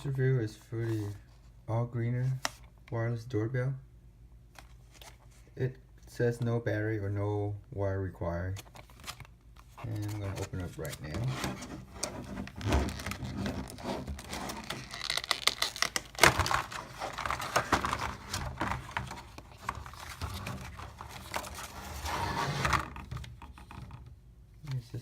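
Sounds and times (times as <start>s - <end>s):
packaging crinkling and tearing: 8.6s - 22.0s.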